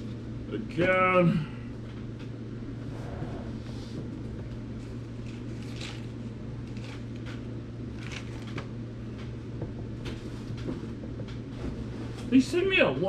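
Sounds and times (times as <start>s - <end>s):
low background hum: 0.0s - 13.0s
food packaging rustling and tapping: 4.4s - 12.3s.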